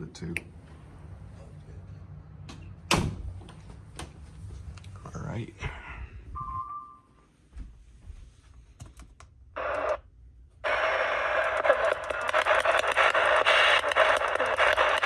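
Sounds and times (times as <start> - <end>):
electronic two-tone beep: 6.4 - 7.1
radio static: 9.6 - 15.0.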